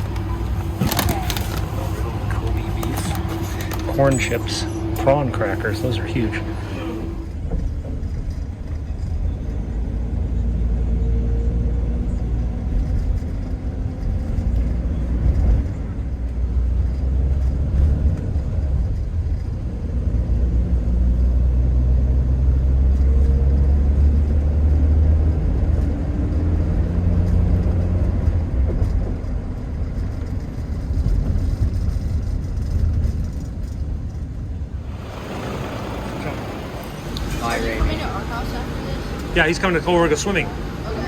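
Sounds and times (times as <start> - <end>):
faint shifting tones: 0.0 - 7.7, 34.7 - 41.0
vehicle engine and road noise: 0.0 - 41.0.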